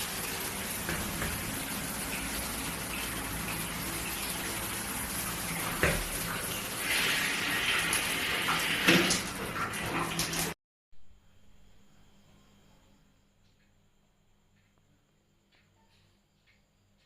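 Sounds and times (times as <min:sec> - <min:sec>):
shower spraying water: 0:00.0 - 0:10.6.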